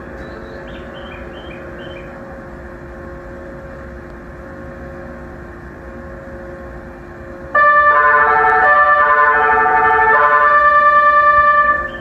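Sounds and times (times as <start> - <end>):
electric train humming: 0.0 - 12.0
high bird-like chirps: 11.8 - 12.0.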